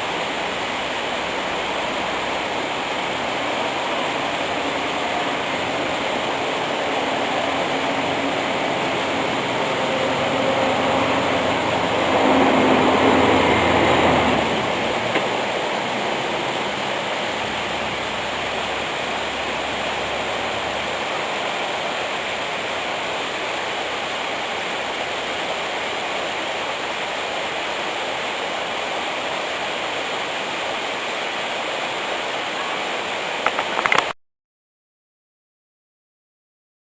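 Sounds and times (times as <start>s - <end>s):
waterfall rushing water: 0.0s - 34.2s.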